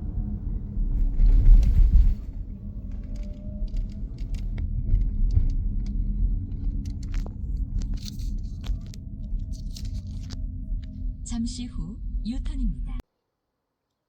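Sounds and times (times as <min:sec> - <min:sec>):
road and tyre rumble in car: 0:00.0 - 0:10.9
light clicks and rattles: 0:02.9 - 0:10.9.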